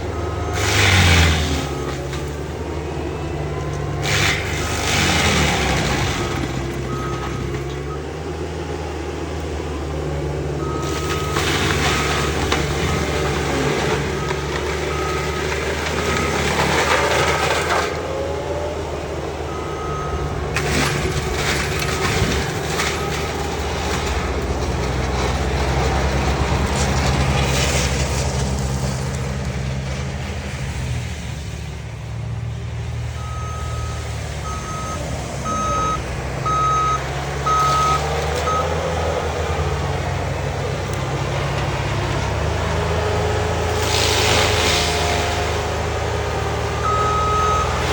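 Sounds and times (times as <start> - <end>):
reversing alarm beeping: 0.0 - 2.4, 5.3 - 8.1, 19.4 - 21.2, 33.1 - 39.2, 46.8 - 47.9
diesel engine running hard: 0.0 - 47.9
mulching head grinding trees: 0.0 - 47.9.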